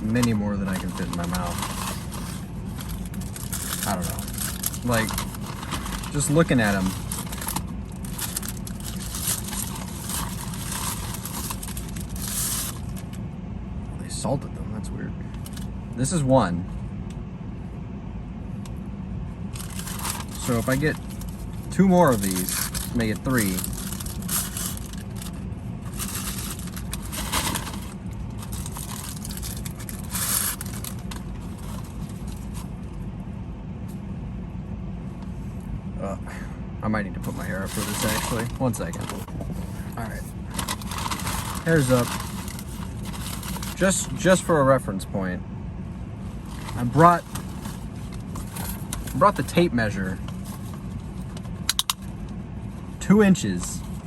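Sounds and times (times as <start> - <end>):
rustling of food handled: 0.0 - 13.0, 19.6 - 32.7
paper wrappers crinkling: 0.0 - 13.1, 19.6 - 32.7, 37.2 - 44.3, 46.4 - 51.4
car idling: 0.0 - 16.0, 19.1 - 54.0
vehicle low rumble: 0.0 - 54.0.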